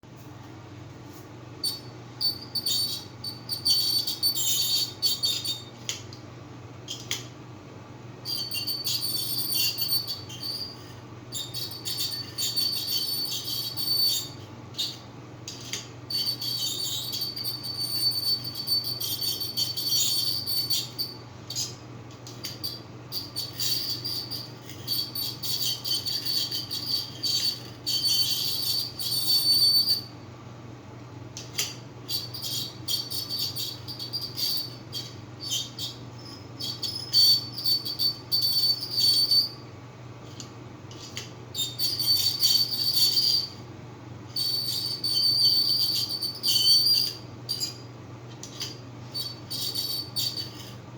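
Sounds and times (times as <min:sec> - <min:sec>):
high whistle-like squeal: 0:11.4 - 0:14.9, 0:16.1 - 0:21.2, 0:22.6 - 0:30.1, 0:32.1 - 0:39.6, 0:41.6 - 0:43.6, 0:44.4 - 0:47.8.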